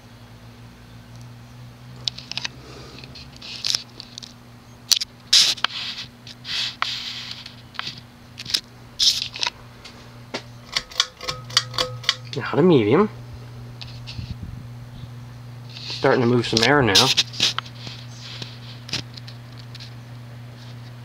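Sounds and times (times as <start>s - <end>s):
ceiling fan motor hum: 0.0s - 21.0s
scratching handling noises: 2.0s - 12.4s, 15.7s - 21.0s.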